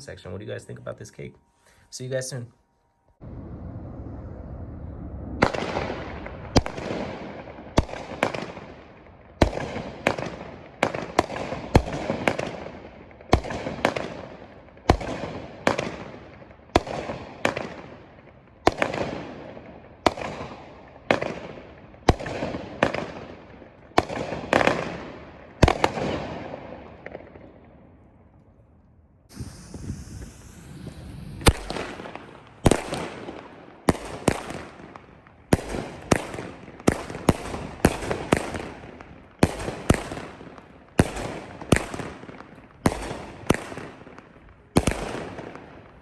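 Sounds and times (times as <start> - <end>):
fireworks shots: 3.2 - 27.6, 29.3 - 46.0
fireworks crackling: 3.6 - 8.7, 29.3 - 45.8.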